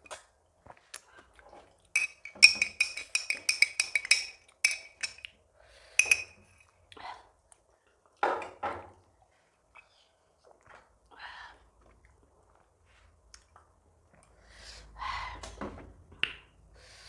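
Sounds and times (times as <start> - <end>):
utensil clinking on metal dishes: 2.0 - 5.2, 6.0 - 6.6.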